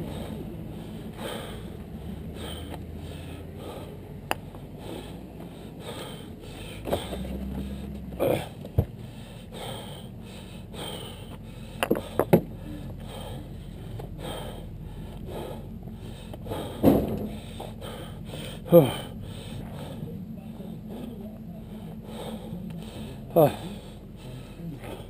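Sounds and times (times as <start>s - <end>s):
engine running at low speed: 0.0s - 25.0s
knocks and clanks: 16.7s - 17.5s.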